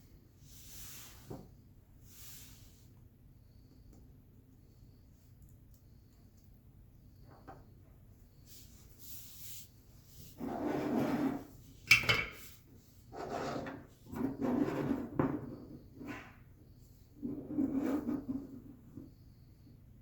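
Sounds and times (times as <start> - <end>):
rubbing and scraping handling sounds: 8.5 - 16.5, 17.2 - 19.1.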